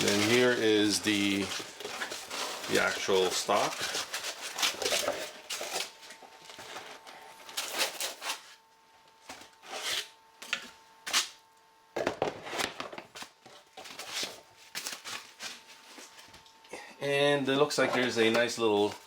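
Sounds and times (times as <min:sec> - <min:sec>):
packaging rustling and crinkling: 0:00.0 - 0:08.6, 0:12.6 - 0:16.5
faint steady hum: 0:00.0 - 0:19.0.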